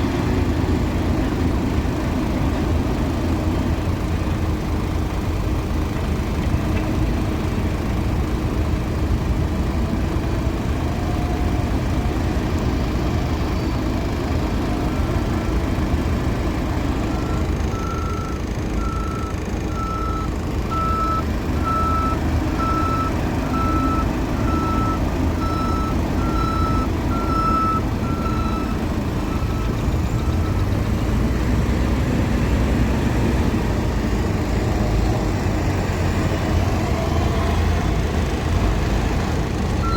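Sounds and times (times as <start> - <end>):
diesel engine running: 0.0 - 39.9
reversing alarm beeping: 17.1 - 30.7.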